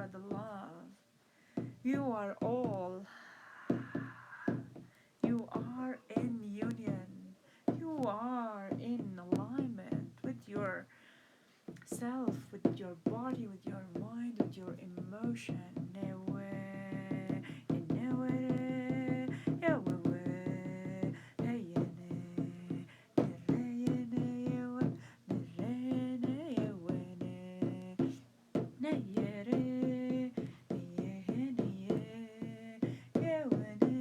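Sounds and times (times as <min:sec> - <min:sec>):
hand drum beat: 0:15.6 - 0:34.0.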